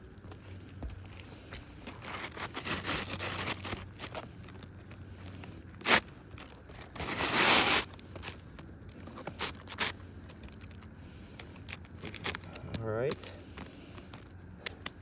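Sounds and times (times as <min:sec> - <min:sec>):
shingle scraping: 0:00.0 - 0:12.8.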